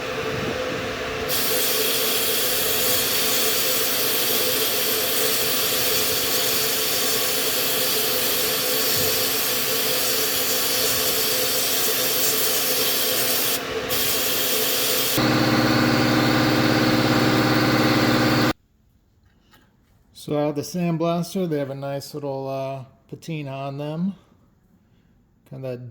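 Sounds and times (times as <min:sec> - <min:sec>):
sandblaster hissing: 0:01.2 - 0:18.6
low motor hum: 0:15.2 - 0:18.6.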